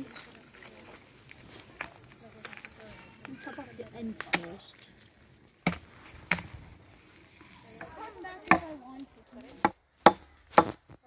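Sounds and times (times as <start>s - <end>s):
chopping strikes into wood: 5.6s - 6.5s, 9.6s - 10.9s.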